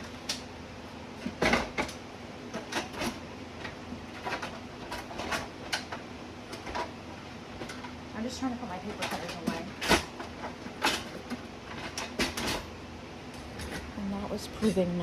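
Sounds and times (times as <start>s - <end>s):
plastic and metal clattering: 1.2s - 7.0s, 8.8s - 12.7s.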